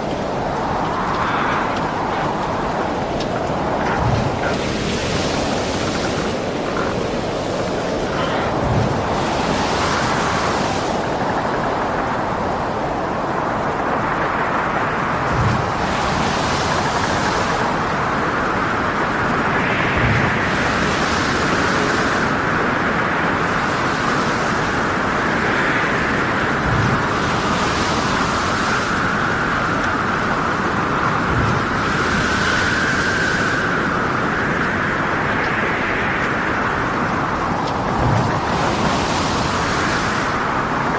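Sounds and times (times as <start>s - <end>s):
heavy waves: 0.0s - 40.9s
wind roaring: 0.0s - 40.9s
wavering wind whistle: 26.9s - 40.6s.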